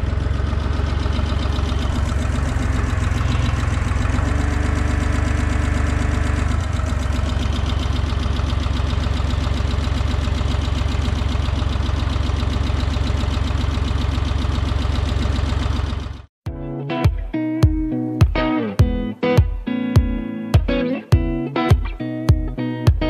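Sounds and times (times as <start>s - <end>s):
tractor diesel engine running: 0.0s - 16.3s.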